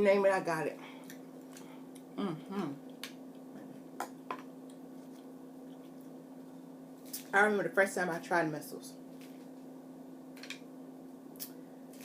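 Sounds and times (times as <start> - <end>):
person humming: 2.2 - 2.8.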